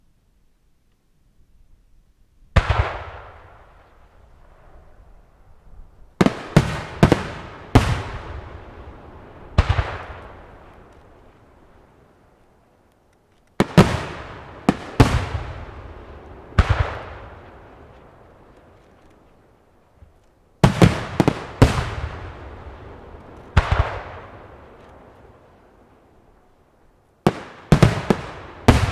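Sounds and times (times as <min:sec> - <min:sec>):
rolling echo: 0:02.5 - 0:28.9
firework shells bursting: 0:27.3 - 0:28.9.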